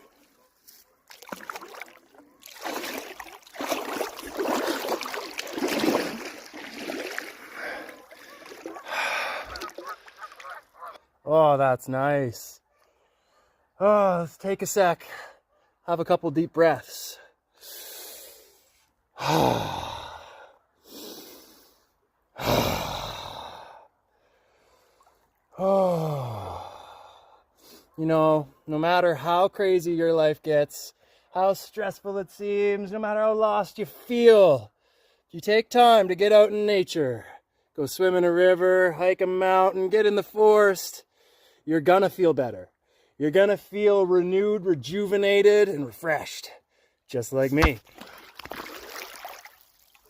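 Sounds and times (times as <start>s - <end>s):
river water splashing: 1.1s - 11.0s, 47.6s - 50.0s
man breathing deeply: 7.4s - 10.2s, 17.5s - 25.1s, 25.8s - 27.9s
man sighing: 8.8s - 9.6s, 19.2s - 20.5s, 22.4s - 23.8s, 25.6s - 27.3s.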